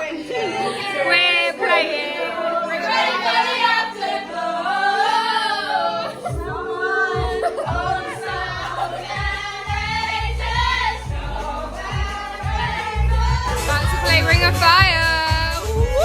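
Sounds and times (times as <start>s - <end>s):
pop music with voices singing: 0.0s - 16.0s
bass beat: 7.2s - 16.0s.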